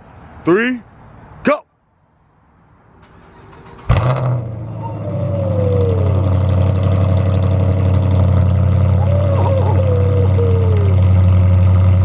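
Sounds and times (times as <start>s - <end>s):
car engine cranking: 3.0s - 4.7s
car engine idling: 3.6s - 12.0s.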